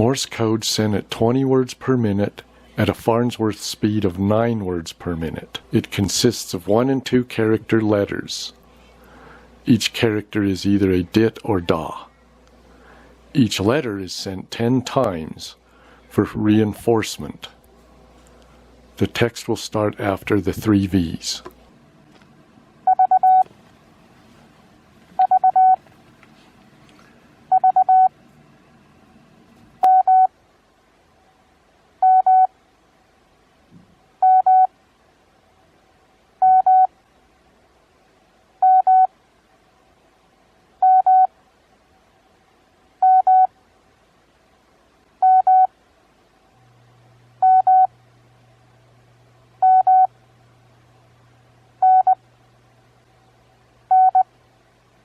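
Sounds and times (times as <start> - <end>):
morse code tone: 22.9 - 23.5, 25.2 - 25.8, 27.5 - 28.1, 29.8 - 30.3, 32.0 - 32.5, 34.2 - 34.7, 36.4 - 36.9, 38.6 - 39.1, 40.8 - 41.3, 43.0 - 43.5, 45.2 - 45.7, 47.4 - 47.9, 49.6 - 50.1, 51.8 - 52.2, 53.9 - 54.3.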